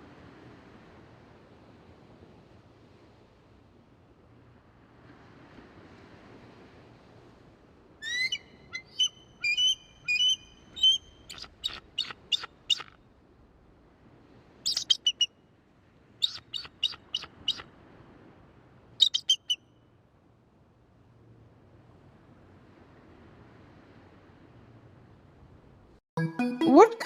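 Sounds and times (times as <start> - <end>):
eagle calling: 8.0 - 12.9, 14.7 - 15.3, 16.2 - 17.6, 19.0 - 19.6.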